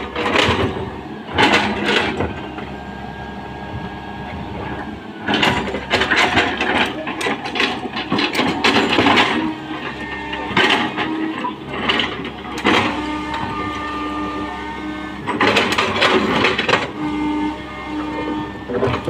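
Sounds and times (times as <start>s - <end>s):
excavator engine and hydraulics whine: 0.0s - 19.0s
bucket loading rough noise: 5.3s - 17.0s.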